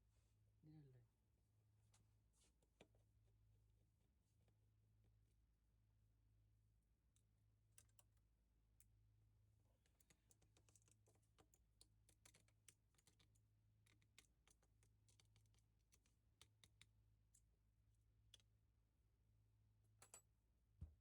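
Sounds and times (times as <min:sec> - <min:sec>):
small tools clicking and tapping: 0:09.8 - 0:17.4.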